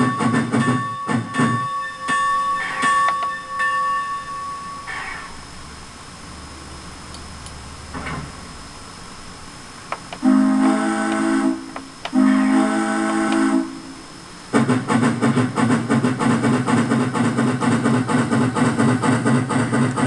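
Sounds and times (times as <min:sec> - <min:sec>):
steam whistle blasts: 0:10.2 - 0:14.0
steam exhaust chuffing: 0:10.2 - 0:20.0.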